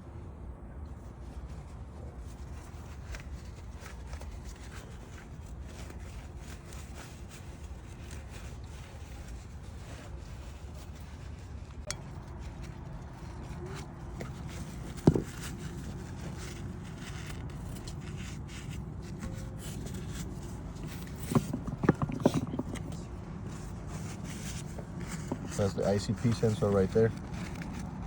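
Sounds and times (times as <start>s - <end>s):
low steady hum: 0.0s - 28.0s
light scraping on metal: 8.5s - 27.8s.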